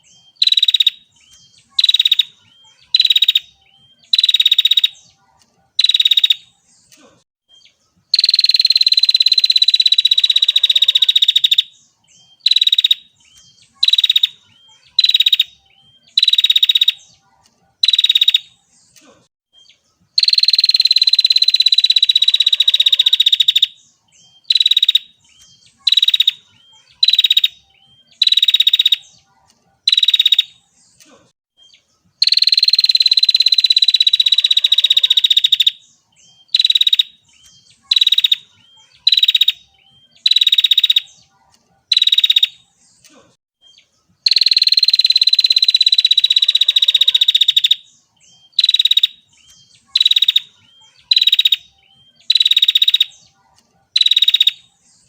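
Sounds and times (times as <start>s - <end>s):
bird high trill: 0.0s - 6.7s, 7.6s - 18.7s, 20.2s - 30.8s, 32.2s - 42.7s, 43.6s - 53.3s, 54.0s - 54.8s.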